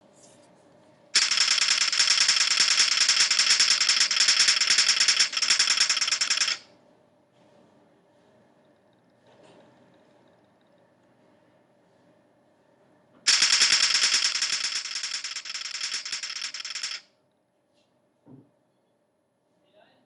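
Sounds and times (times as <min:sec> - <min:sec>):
loud rapid rattling: 0:01.2 - 0:06.6, 0:13.3 - 0:17.0.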